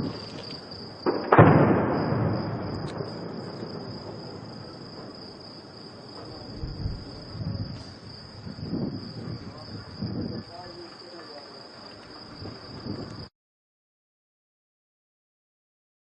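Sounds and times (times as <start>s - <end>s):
crickets chirping: 0.0s - 13.3s
loud gunshot bang with echo: 1.1s - 4.0s
faint low thumps: 6.1s - 10.4s.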